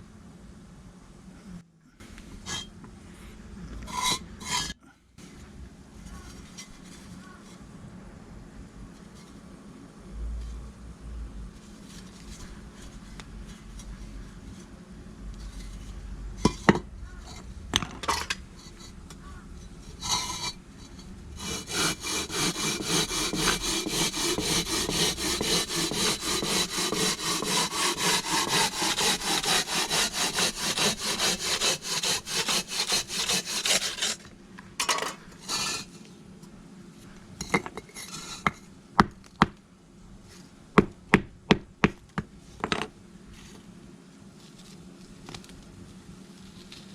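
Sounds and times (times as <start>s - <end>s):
hand tool rasping on brick: 21.4s - 34.3s, 35.4s - 35.9s.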